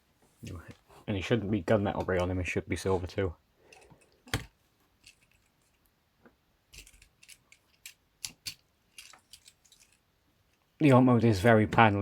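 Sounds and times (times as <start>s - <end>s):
plastic toy joints clicking: 6.7s - 10.0s.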